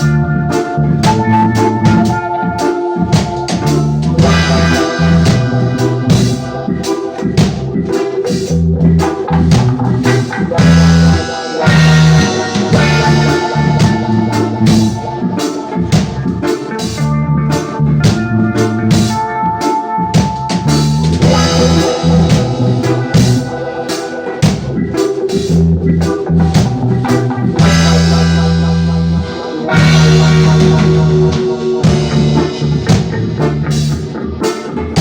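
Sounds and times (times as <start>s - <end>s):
bass line: 0.0s - 35.0s
drum kit beat: 0.0s - 35.0s
guitar: 0.0s - 35.0s
held keyboard note: 0.0s - 35.0s.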